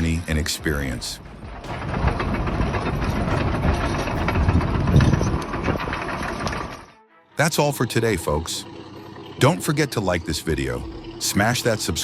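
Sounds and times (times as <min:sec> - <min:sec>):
heavy vehicle engine running: 0:00.0 - 0:07.0.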